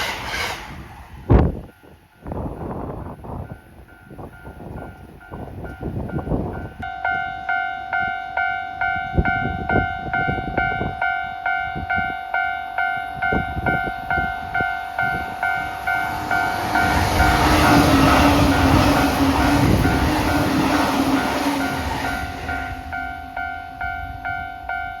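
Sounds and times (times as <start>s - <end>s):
approaching train rushing: 0.0s - 6.8s, 12.9s - 25.0s.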